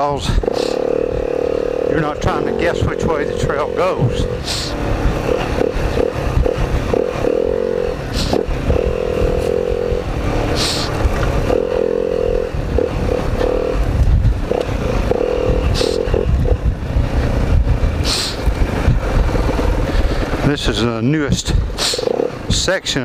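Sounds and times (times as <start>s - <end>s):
dirt bike engine revving: 0.0s - 22.7s
short scraping hisses: 10.6s - 11.0s, 18.0s - 18.4s.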